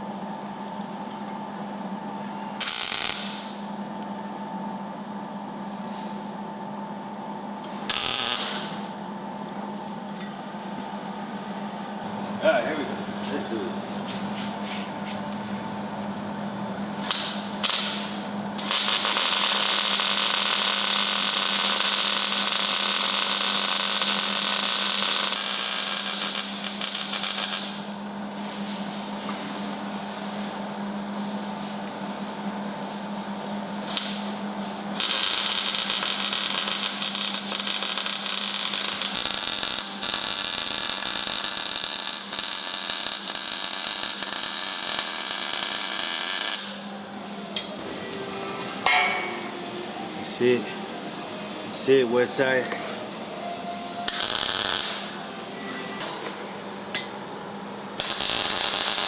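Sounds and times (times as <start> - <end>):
electrical hum: 0.0 - 59.0
arc welding crackle: 2.6 - 3.8, 7.9 - 8.8, 17.0 - 28.1, 33.8 - 47.0, 54.0 - 55.2, 58.0 - 59.0.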